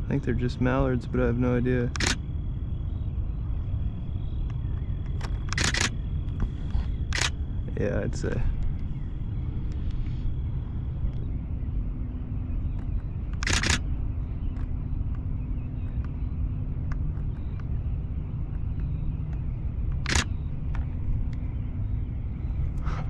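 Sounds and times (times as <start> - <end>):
steady low rumble: 0.0 - 23.0
camera shutter bursts: 1.9 - 2.2, 5.5 - 5.9, 7.1 - 7.4, 13.4 - 13.8, 20.0 - 20.3.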